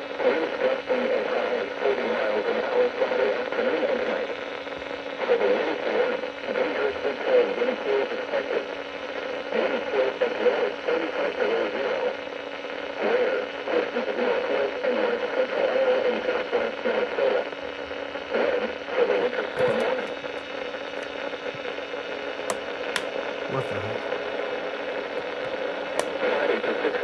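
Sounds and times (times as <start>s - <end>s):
radio static hiss and hum: 19.0s - 27.0s
sharp clicks: 19.5s - 21.7s, 22.5s - 23.9s, 25.1s - 26.2s
garbled radio voice: 19.6s - 20.4s, 23.0s - 24.1s.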